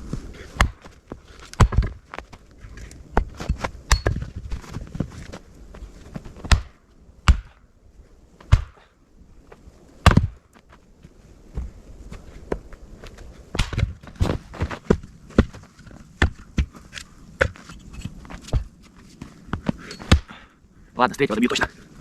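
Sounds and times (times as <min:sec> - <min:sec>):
sharp chopping strikes: 0:06.5 - 0:07.6, 0:08.5 - 0:08.8, 0:20.0 - 0:20.4.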